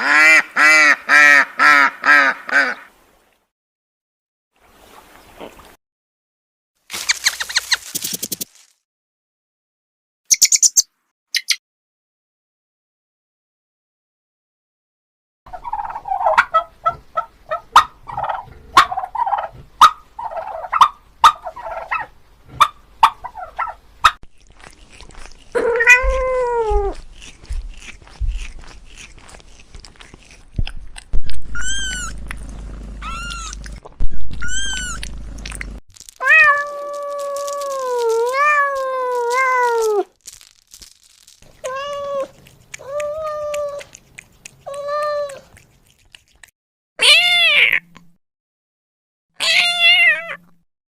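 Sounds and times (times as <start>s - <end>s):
kitten mewing: 25.1s - 29.4s, 31.2s - 32.4s, 33.0s - 35.1s, 36.2s - 40.1s, 41.5s - 45.6s, 47.0s - 47.9s, 49.4s - 50.5s
cats meowing: 25.5s - 27.3s, 31.4s - 32.2s, 33.0s - 35.0s, 36.2s - 40.1s, 41.5s - 44.0s, 44.6s - 45.6s, 47.0s - 47.9s, 49.4s - 50.5s.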